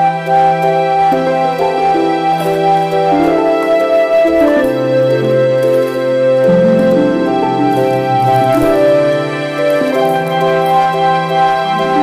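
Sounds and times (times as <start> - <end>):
soft slow background music: 0.0 - 12.0.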